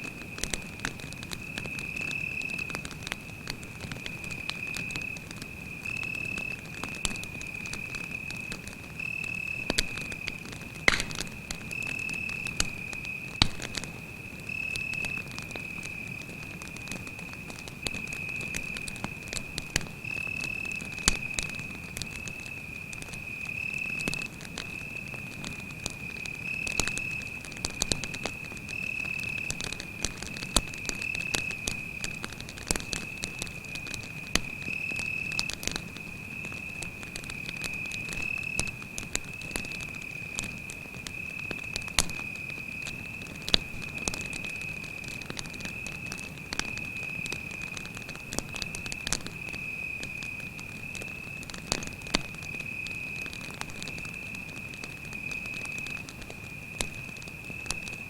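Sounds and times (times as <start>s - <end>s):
campfire crackling and popping: 0.0s - 58.0s
cricket trilling: 3.9s - 58.0s.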